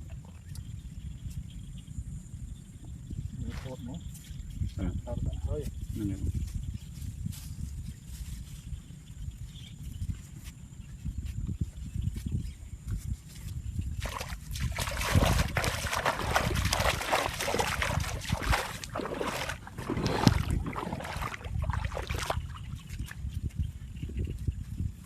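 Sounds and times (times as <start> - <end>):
water splashing and sloshing: 14.0 - 23.5.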